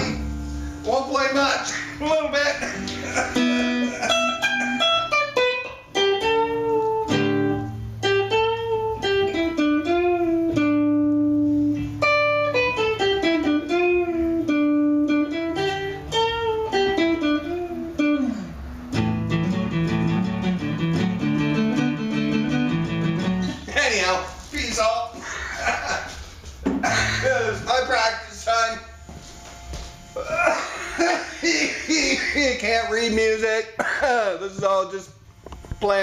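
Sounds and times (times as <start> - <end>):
solo guitar melody: 0.0 - 23.7
guitar chords: 0.0 - 24.3, 25.0 - 33.8.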